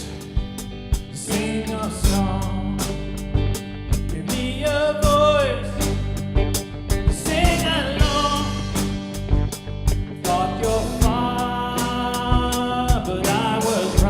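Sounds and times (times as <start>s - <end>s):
drum hits: 0.0s - 1.2s, 2.9s - 11.5s
band playing worship song: 0.0s - 14.0s
person singing long sliding notes: 7.2s - 8.8s, 10.2s - 14.0s.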